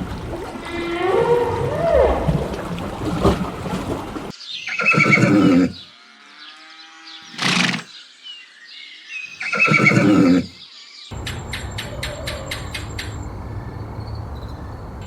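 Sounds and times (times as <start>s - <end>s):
horse whinnying: 4.7s - 5.8s, 7.3s - 7.9s, 9.4s - 10.5s.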